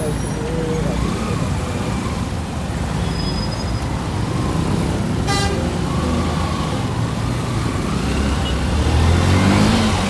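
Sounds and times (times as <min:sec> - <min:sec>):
motorcycle engine and road rumble: 0:00.0 - 0:10.0
vehicle horn toot: 0:05.2 - 0:05.7.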